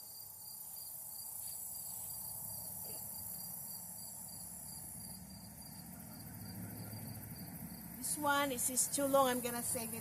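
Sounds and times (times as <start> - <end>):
insect high trill: 0.0 - 10.0.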